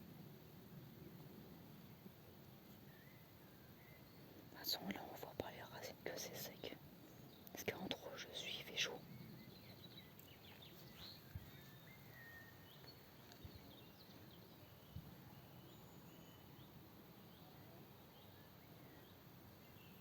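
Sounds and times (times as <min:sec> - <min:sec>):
low steady hiss: 0:00.0 - 0:20.0
small birds chirping: 0:02.7 - 0:20.0.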